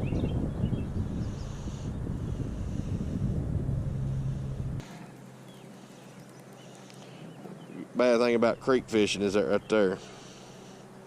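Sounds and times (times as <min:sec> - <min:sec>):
wind buffeting microphone: 0:00.0 - 0:04.8.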